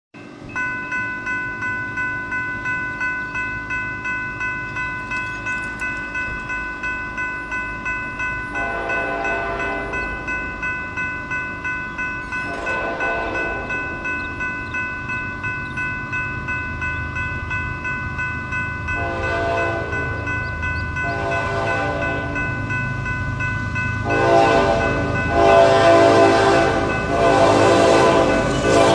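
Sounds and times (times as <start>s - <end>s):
crossing bell ringing: 0.2s - 28.9s
train rumble: 0.2s - 28.9s
locomotive horn blasts: 8.5s - 10.0s, 12.4s - 14.0s, 18.9s - 20.2s, 21.0s - 22.6s, 24.0s - 28.9s.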